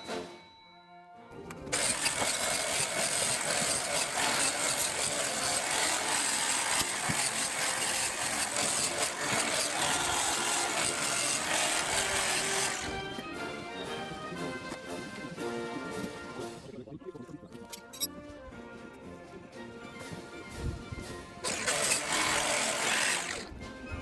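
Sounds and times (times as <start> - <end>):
engine running: 1.7 - 15.4.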